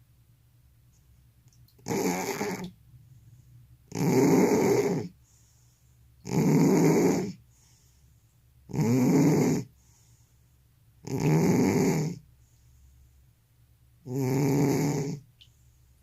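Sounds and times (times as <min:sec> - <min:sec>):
cat snoring: 0:01.8 - 0:02.7, 0:03.9 - 0:05.2, 0:06.2 - 0:07.4, 0:08.7 - 0:09.7, 0:11.0 - 0:12.2, 0:14.0 - 0:15.2.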